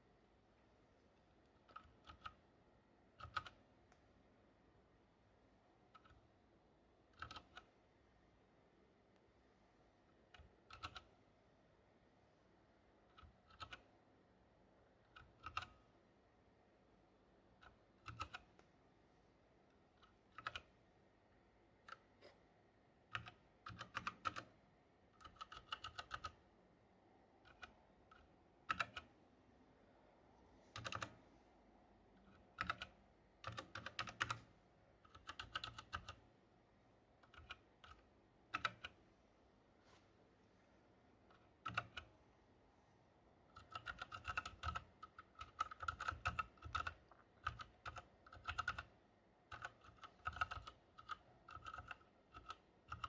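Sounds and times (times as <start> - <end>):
mechanical keyboard keys clicking: 1.6 - 2.4, 3.2 - 3.6, 7.1 - 7.7, 10.3 - 11.1, 13.1 - 13.8, 15.1 - 15.8, 17.6 - 18.5, 20.3 - 20.7, 23.1 - 24.5, 25.2 - 26.4, 30.8 - 31.2, 32.2 - 36.2, 37.2 - 39.0, 41.3 - 42.1, 43.5 - 48.9, 49.5 - 53.0.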